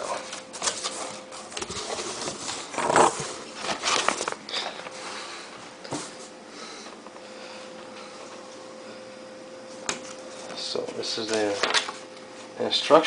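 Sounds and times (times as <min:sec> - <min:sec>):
cardboard box rustling and scraping: 0:00.5 - 0:04.3.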